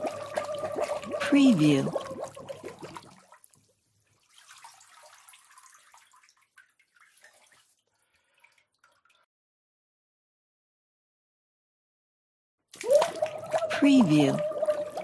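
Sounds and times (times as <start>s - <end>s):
water splashing and dripping: 0.0s - 9.3s, 12.7s - 15.0s.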